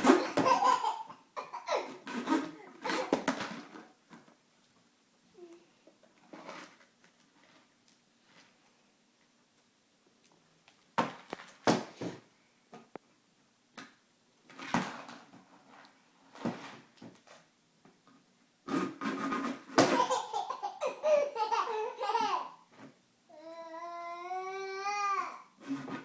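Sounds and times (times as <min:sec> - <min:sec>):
child laughing and giggling: 0:00.0 - 0:03.2, 0:19.8 - 0:22.7.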